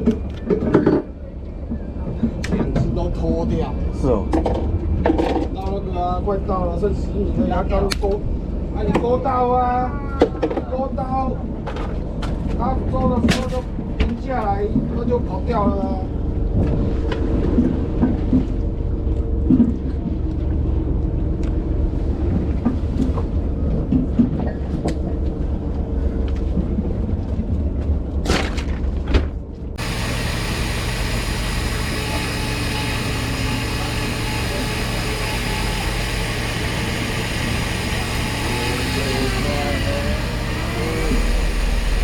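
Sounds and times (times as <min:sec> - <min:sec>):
boat engine humming: 0:00.0 - 0:42.0.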